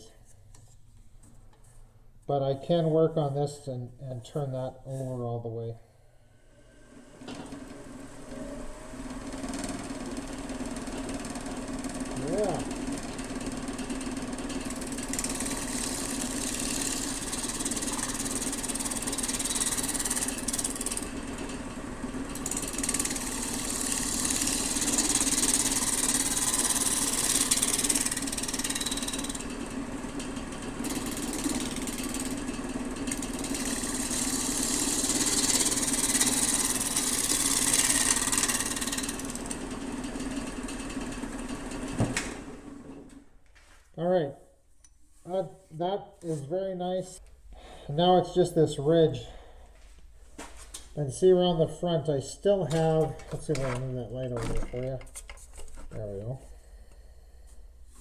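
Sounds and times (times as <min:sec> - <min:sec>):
lathe motor hum: 0:06.4 - 0:43.2
tool cutting wood hiss: 0:22.4 - 0:29.4, 0:33.1 - 0:39.4.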